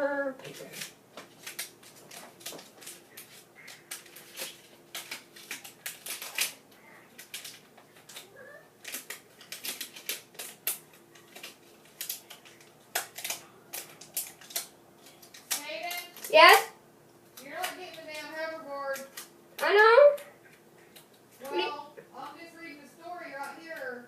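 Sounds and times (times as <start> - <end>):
hands rummaging through objects: 0.4 - 16.3.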